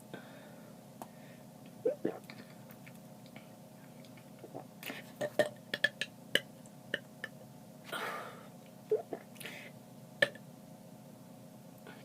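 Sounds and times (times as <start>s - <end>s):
faint steady hum: 0.0s - 12.0s
person gulping: 1.9s - 2.5s, 4.4s - 6.1s, 8.9s - 9.4s.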